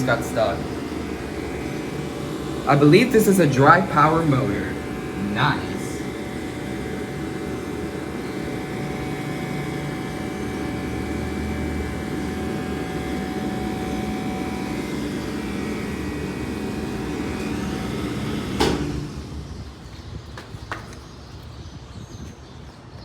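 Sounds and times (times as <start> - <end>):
constant whine: 0.0 - 23.0
electric motor and pump humming: 0.0 - 23.0.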